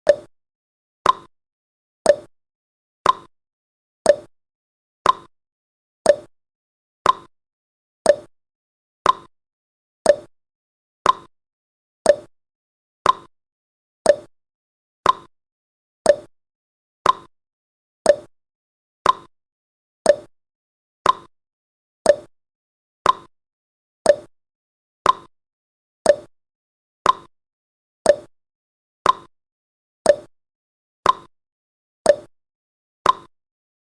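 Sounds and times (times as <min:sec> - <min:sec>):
timer ticking: 0:00.0 - 0:00.3, 0:01.0 - 0:01.3, 0:02.1 - 0:02.3, 0:03.0 - 0:03.3, 0:04.0 - 0:04.3, 0:05.0 - 0:05.3, 0:06.0 - 0:06.3, 0:07.0 - 0:07.3, 0:08.1 - 0:08.3, 0:09.0 - 0:09.3, 0:10.0 - 0:10.3, 0:11.0 - 0:11.3, 0:12.0 - 0:12.3, 0:13.0 - 0:13.3, 0:14.0 - 0:14.3, 0:15.0 - 0:15.3, 0:16.0 - 0:16.3, 0:17.0 - 0:17.3, 0:18.1 - 0:18.3, 0:19.0 - 0:19.3, 0:20.1 - 0:20.3, 0:21.0 - 0:21.3, 0:22.1 - 0:22.3, 0:23.0 - 0:23.3, 0:24.1 - 0:24.3, 0:25.0 - 0:25.3, 0:26.0 - 0:26.3, 0:27.0 - 0:27.3, 0:28.1 - 0:28.3, 0:29.0 - 0:29.3, 0:30.1 - 0:30.3, 0:31.0 - 0:31.3, 0:32.1 - 0:32.3, 0:33.0 - 0:33.3.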